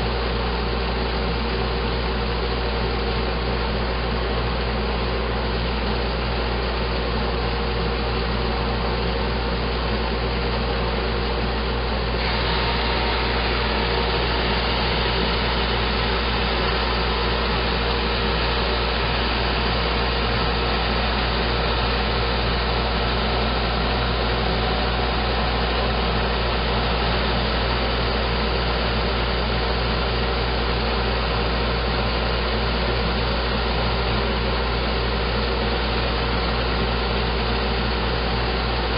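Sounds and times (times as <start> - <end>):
drum sander motor hum: 0.0 - 38.9
sander hiss: 9.6 - 38.9.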